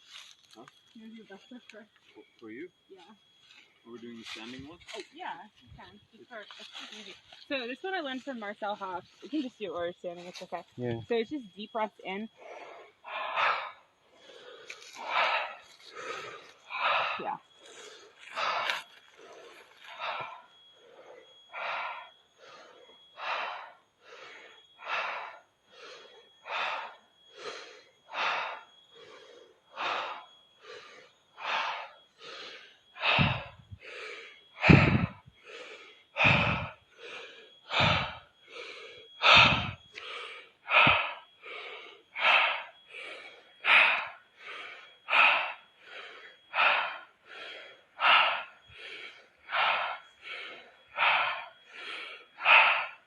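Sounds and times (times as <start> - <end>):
rapid forceful breathing: 0.0 - 53.0
breath thumping on microphone: 34.6 - 35.2, 36.2 - 36.8, 37.7 - 38.2, 39.2 - 39.8, 40.7 - 41.2.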